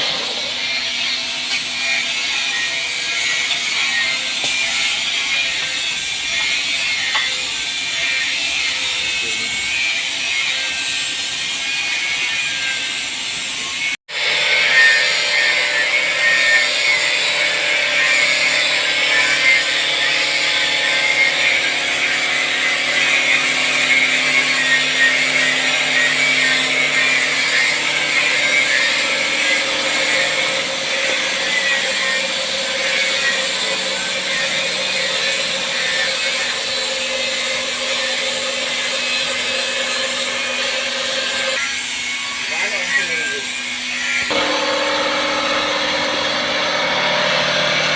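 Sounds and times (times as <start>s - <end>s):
wood lathe running: 14.1s - 41.6s, 44.2s - 47.9s
cutter rasping on wood: 14.1s - 41.7s.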